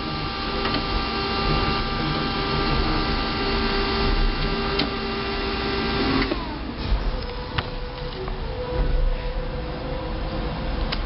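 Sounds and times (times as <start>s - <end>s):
computer fans whirring: 0.0s - 11.0s.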